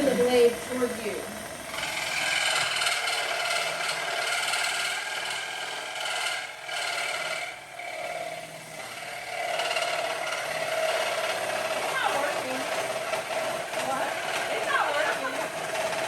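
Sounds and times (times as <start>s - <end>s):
scroll saw cutting wood: 0.0s - 16.0s.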